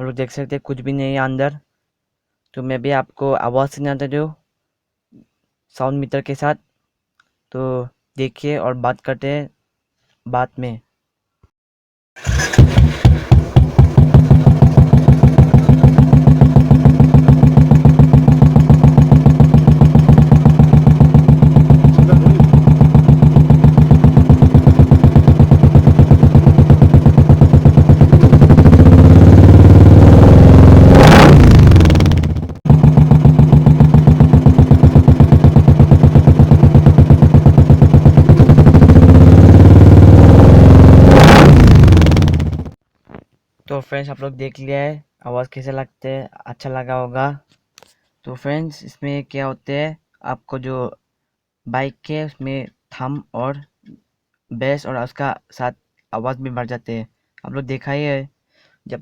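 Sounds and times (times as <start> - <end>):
motorcycle engine idling and revving: 12.2 - 42.8.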